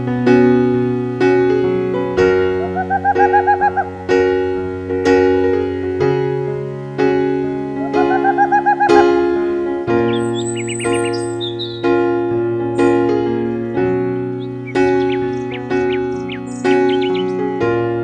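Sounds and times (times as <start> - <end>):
calm piano music: 0.0 - 18.0
warbling bird call: 2.6 - 3.9, 10.0 - 12.0, 12.6 - 18.0.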